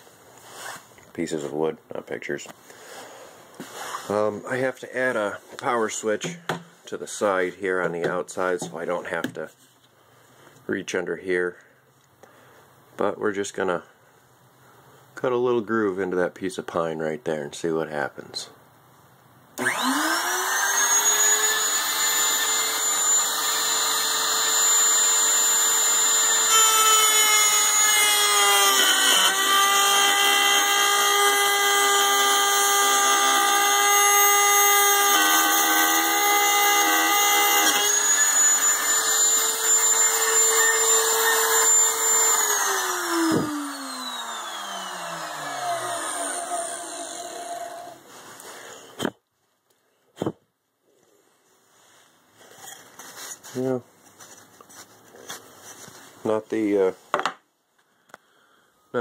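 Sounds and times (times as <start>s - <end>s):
electric router whining: 19.6s - 48.0s
router bit cutting wood: 19.6s - 48.0s.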